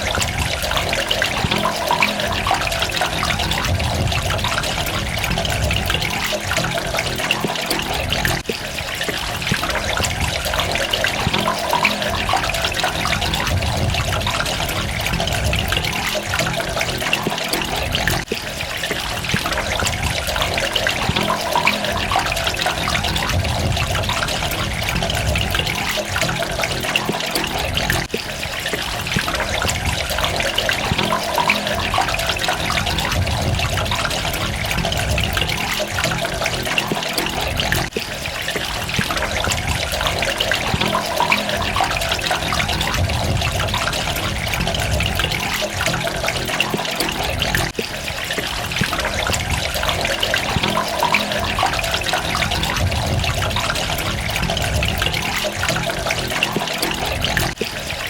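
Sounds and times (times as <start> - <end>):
water trickling and splashing: 0.0 - 58.0.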